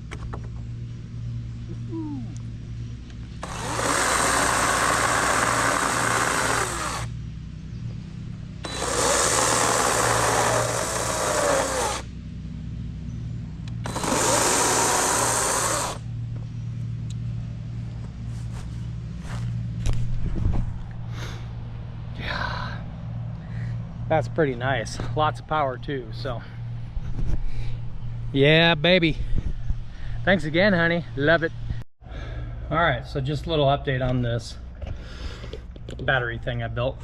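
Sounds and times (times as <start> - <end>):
steady low hum: 0.0 - 37.0
chainsaw cutting log: 3.4 - 7.1, 8.6 - 12.1, 13.8 - 16.0.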